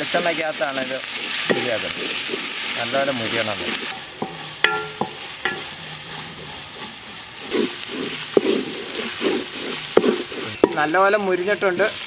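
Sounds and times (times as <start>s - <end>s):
food sizzling in oil: 0.0s - 12.0s
spoon stirring and scraping pan: 0.1s - 12.0s
spoon clinking against pan: 4.2s - 5.6s.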